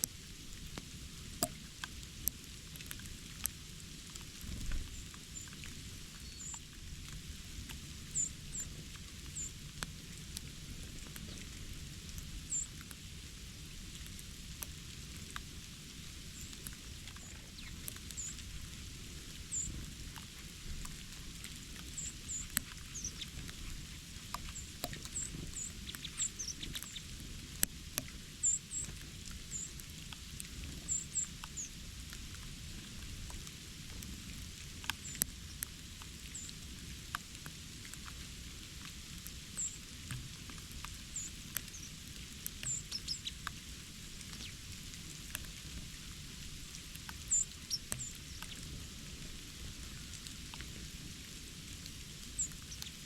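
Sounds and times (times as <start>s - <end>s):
small birds chirping: 4.6s - 6.6s, 8.1s - 9.5s, 12.5s - 12.7s, 17.2s - 18.5s, 19.2s - 19.8s, 21.7s - 27.2s, 28.0s - 28.9s, 29.5s - 29.8s, 30.8s - 31.8s, 36.3s - 36.5s, 39.6s - 39.8s, 41.1s - 43.5s, 47.3s - 48.9s
faint sharp ticks: 24.3s - 29.9s, 47.0s - 48.8s.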